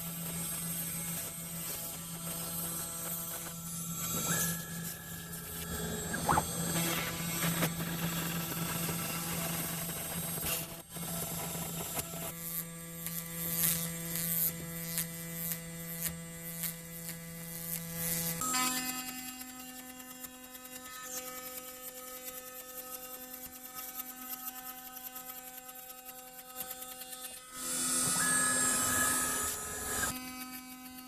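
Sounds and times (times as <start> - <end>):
cutter hissing on plastic: 0.0 - 12.4
router spindle humming: 0.0 - 12.4, 27.6 - 30.7.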